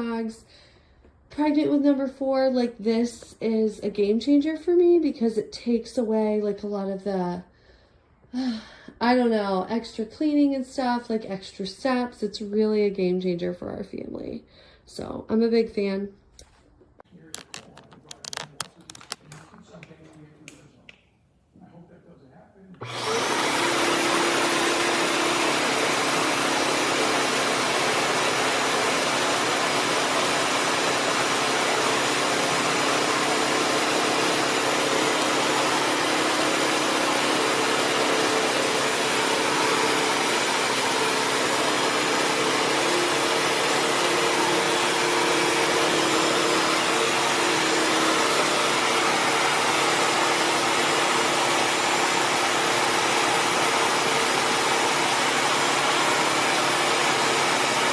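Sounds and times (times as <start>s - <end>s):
vacuum cleaner motor running: 22.8s - 57.9s.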